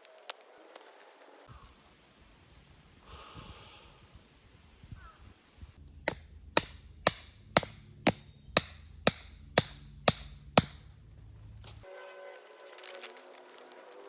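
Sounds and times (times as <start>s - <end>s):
hand tool striking: 6.0s - 10.9s.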